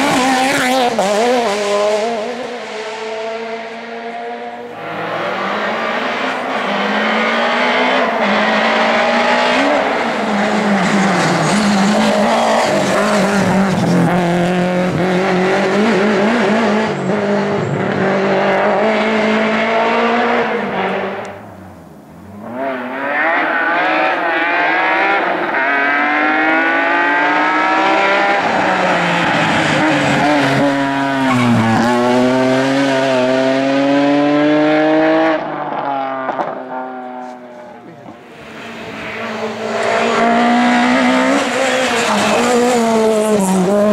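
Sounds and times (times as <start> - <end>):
car accelerating through gears: 0.0 - 21.4, 22.2 - 43.9
rally car engines revving: 0.0 - 43.9
tire squeal: 28.4 - 32.0.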